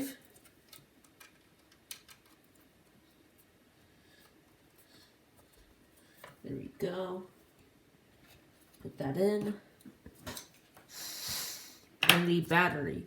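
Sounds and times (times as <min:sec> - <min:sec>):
small hard parts clicking: 0:00.4 - 0:02.4.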